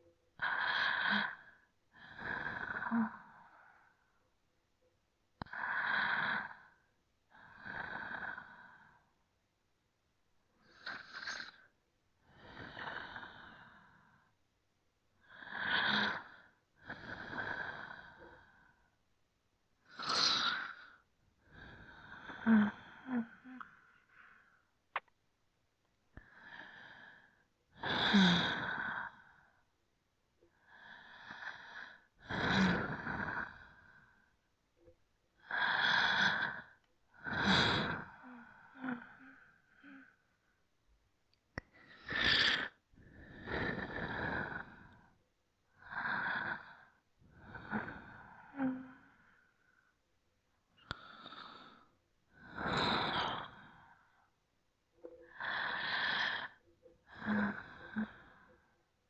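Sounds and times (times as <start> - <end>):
slow deep breathing: 35.4 - 40.7, 41.6 - 50.0, 50.8 - 54.4, 55.0 - 58.9.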